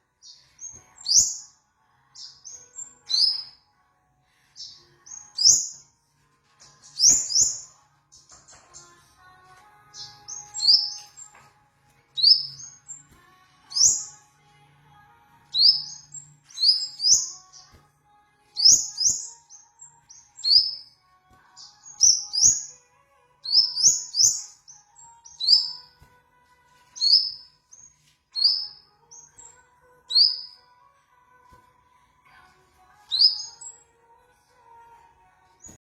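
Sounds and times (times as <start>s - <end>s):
sharp upward-sweeping bird chirps: 4.6s - 5.8s, 10.0s - 11.1s, 12.2s - 14.2s, 15.5s - 17.8s, 18.5s - 22.8s, 23.4s - 26.0s, 27.0s - 30.6s, 33.0s - 33.8s.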